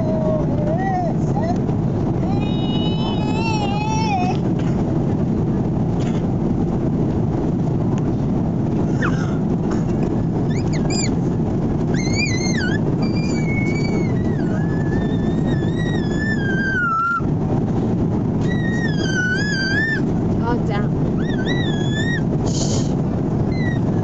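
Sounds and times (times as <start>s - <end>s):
airliner cabin drone: 0.0s - 24.0s
high wavering squeals: 10.4s - 11.2s, 11.9s - 17.3s, 18.4s - 20.6s, 21.2s - 22.3s, 23.5s - 24.0s.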